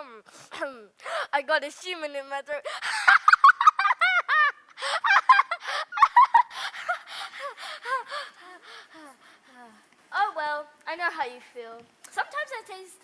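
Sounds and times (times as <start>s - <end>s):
gasping breaths: 6.5s - 9.9s.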